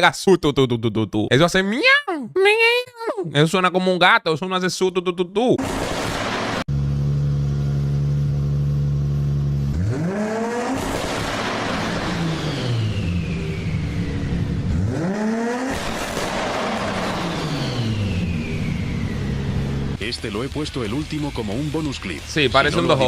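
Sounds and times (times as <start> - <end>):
car engine idling and revving: 5.9 - 20.0.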